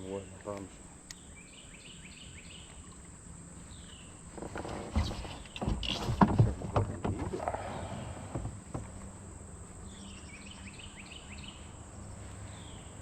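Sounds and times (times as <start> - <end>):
bird chirping: 0.0 - 4.3, 9.8 - 13.0
high insect drone: 0.0 - 13.0.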